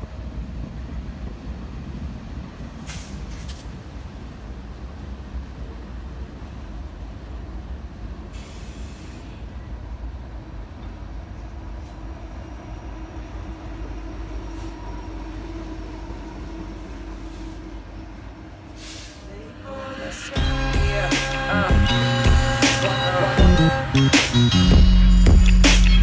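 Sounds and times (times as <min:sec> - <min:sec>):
freight train rumbling past: 0:00.0 - 0:26.0
short hiss: 0:02.8 - 0:03.7, 0:08.4 - 0:09.4.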